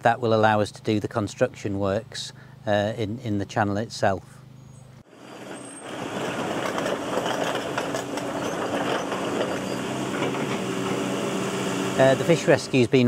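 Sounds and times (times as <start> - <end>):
construction machinery engine humming: 0.0 - 13.0
knocks and clatter: 5.4 - 11.1.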